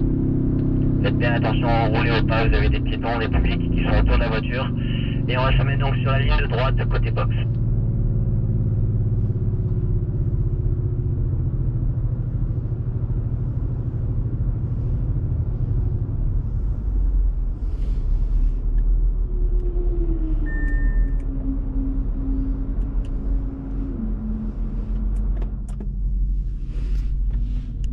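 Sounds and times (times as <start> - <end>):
car engine at low revs: 0.0 - 27.9.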